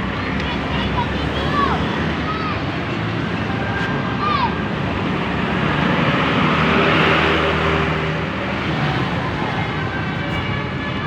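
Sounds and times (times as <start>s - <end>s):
vehicle passing by: 4.6s - 10.2s.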